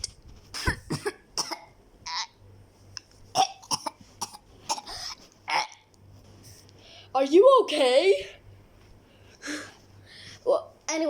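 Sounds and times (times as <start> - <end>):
person coughing: 0.6 - 2.3, 3.4 - 5.8.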